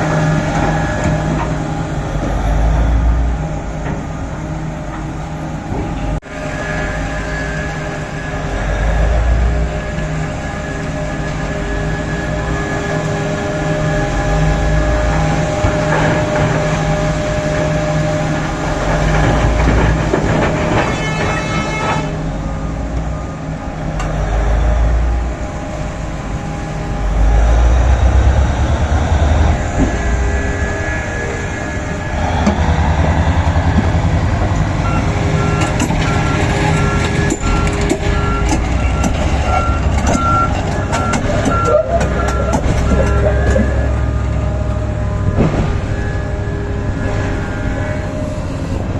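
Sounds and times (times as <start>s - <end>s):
excavator engine under load: 0.0s - 48.9s
beeping alarm: 34.6s - 48.9s.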